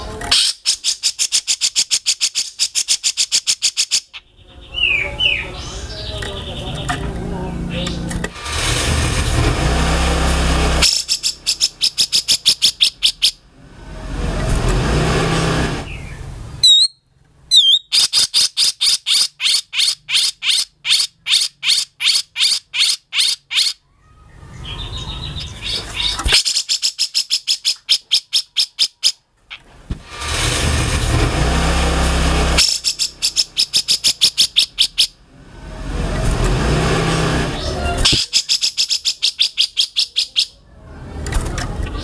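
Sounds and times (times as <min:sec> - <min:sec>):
bird rasping calls: 0:00.0 - 0:08.9, 0:10.0 - 0:13.5, 0:15.8 - 0:30.6, 0:32.2 - 0:35.2, 0:37.2 - 0:40.6
bird sharp high chirps: 0:00.3 - 0:06.9, 0:10.8 - 0:13.4, 0:15.8 - 0:29.6, 0:32.6 - 0:35.2, 0:37.6 - 0:40.6
bird short rising whistles: 0:16.6 - 0:18.0.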